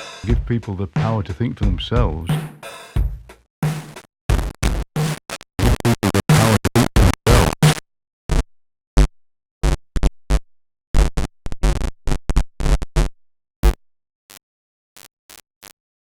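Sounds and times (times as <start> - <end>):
chopped drum machine hits: 0.0 - 7.7.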